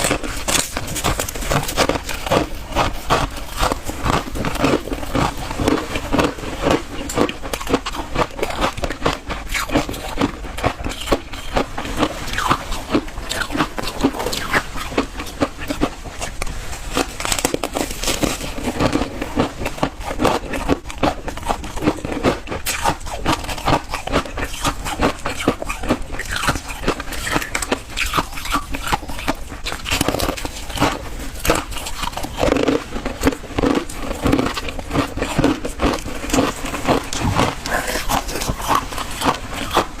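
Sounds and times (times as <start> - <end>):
person chewing ice: 0.0 - 40.0.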